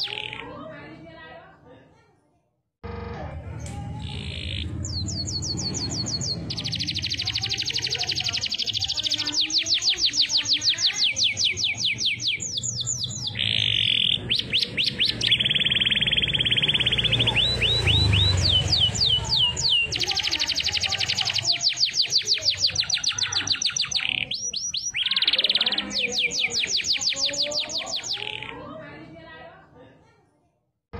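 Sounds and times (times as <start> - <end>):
canary singing: 0.0 - 0.7, 2.9 - 28.8.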